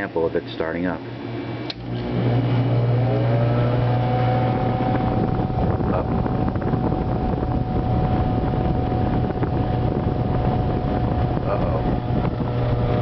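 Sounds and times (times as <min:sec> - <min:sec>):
air conditioner fan motor whine: 0:00.0 - 0:13.0
low hum: 0:01.0 - 0:13.0
rushing air: 0:03.4 - 0:13.0.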